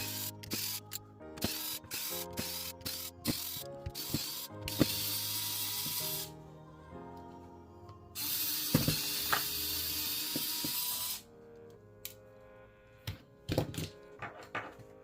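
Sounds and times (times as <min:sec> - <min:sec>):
electric screwdriver running: 0:08.2 - 0:11.2.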